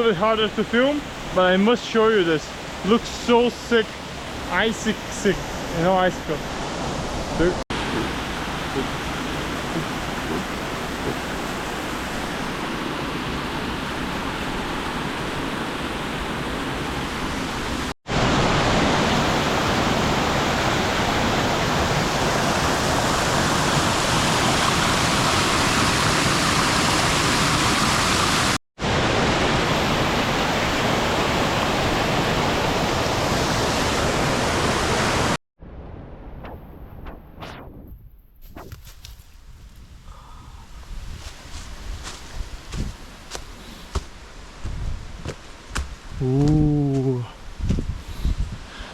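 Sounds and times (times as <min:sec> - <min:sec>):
waterfall rushing: 0:01.4 - 0:35.4
footsteps: 0:41.1 - 0:48.0.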